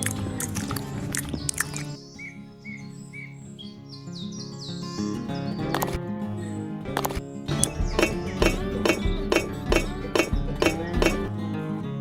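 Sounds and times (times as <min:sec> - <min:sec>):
background music with held notes: 0:00.0 - 0:12.0
sharp clicks: 0:07.0 - 0:11.3
deep bass beat: 0:07.6 - 0:11.3.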